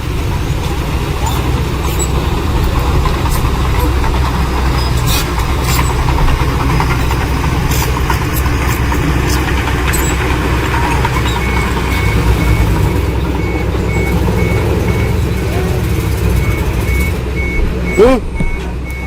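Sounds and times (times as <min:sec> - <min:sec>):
diesel machinery engine rumble: 0:00.0 - 0:19.0
reversing alarm beeping: 0:09.9 - 0:19.0.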